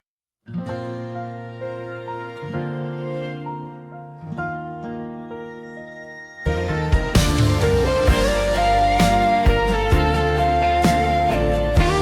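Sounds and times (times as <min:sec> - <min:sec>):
soft slow instrumental music: 0:00.5 - 0:12.0.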